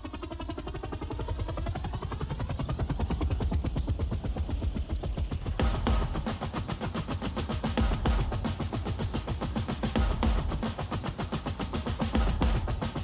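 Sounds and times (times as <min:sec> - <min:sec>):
fast drum roll: 0:05.5 - 0:13.0
full drum beat: 0:05.6 - 0:13.0.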